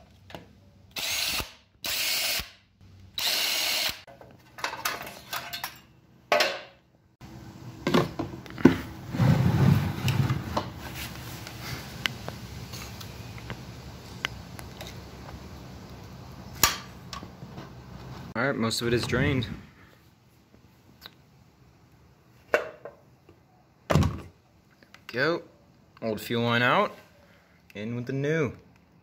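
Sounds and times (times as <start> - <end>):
power drill spinning out bolts: 3.2 - 4.0.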